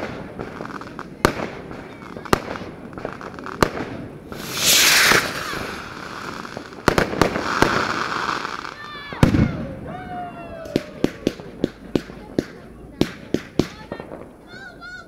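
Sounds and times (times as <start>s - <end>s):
firework bangs: 0.0s - 15.0s
fireworks hissing and crackling: 0.0s - 15.0s.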